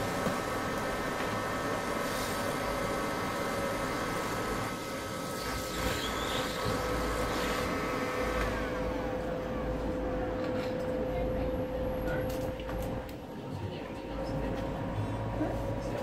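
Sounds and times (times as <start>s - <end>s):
hot-air station fan hiss: 0.0s - 8.6s.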